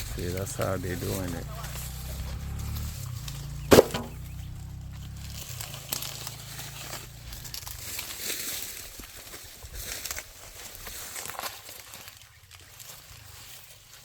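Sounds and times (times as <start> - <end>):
dry corn plants rustling: 0.0 - 14.0
corn ear snapping: 5.2 - 9.1.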